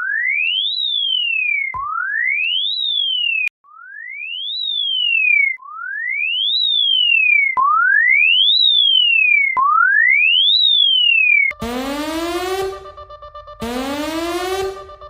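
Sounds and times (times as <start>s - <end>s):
electronic alarm tone sweeping: 0.0s - 15.0s.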